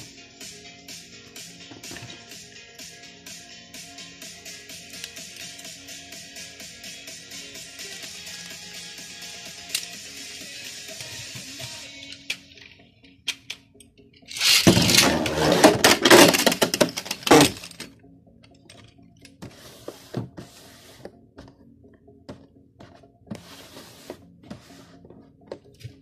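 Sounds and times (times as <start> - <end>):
scraping and clicks: 14.2 - 17.9
spinning tops clashing in plastic stadium: 14.3 - 15.2.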